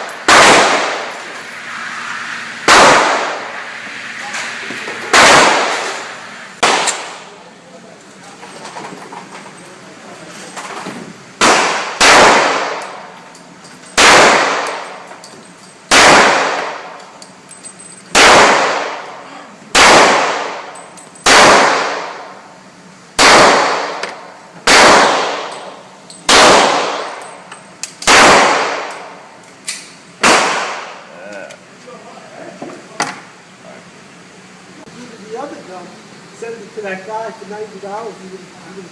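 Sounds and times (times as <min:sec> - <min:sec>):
pistol shots echoing: 0:00.0 - 0:01.2, 0:02.6 - 0:03.5, 0:05.1 - 0:07.3, 0:11.4 - 0:13.1, 0:14.0 - 0:15.0, 0:15.9 - 0:17.0, 0:18.1 - 0:19.1, 0:19.7 - 0:22.3, 0:23.2 - 0:27.2, 0:28.0 - 0:29.2, 0:30.2 - 0:31.0.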